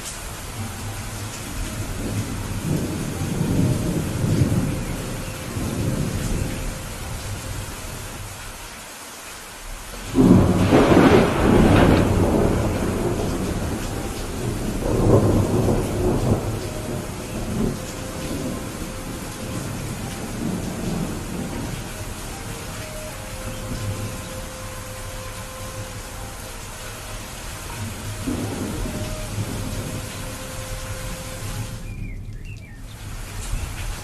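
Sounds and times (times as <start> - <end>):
steady rain: 0.0 - 34.0
rolling thunder: 1.1 - 8.4, 10.0 - 34.0
loud thunderclap: 10.0 - 21.9, 27.8 - 30.3.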